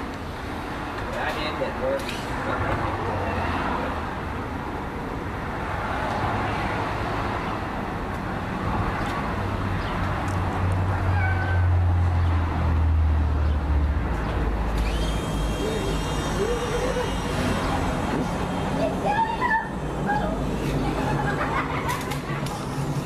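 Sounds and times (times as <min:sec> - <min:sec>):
toy helicopter motor buzzing: 0:14.8 - 0:19.5.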